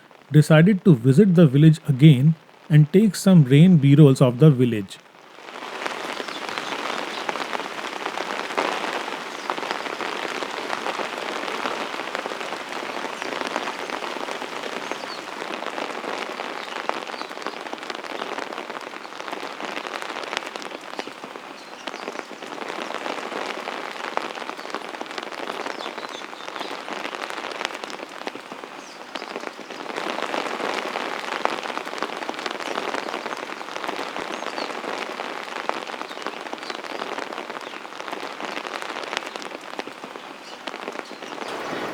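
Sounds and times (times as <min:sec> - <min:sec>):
rain falling: 0:00.0 - 0:41.9.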